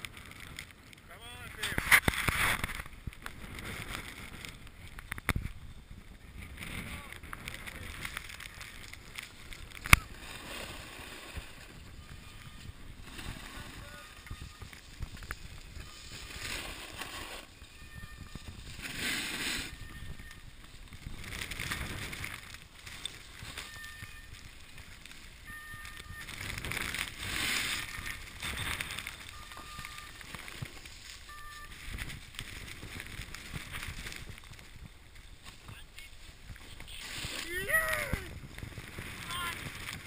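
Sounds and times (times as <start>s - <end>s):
wind rumbling on microphone: 0.0s - 40.0s
snowboard scraping over snow: 6.1s - 22.6s, 26.3s - 31.3s, 35.5s - 40.0s.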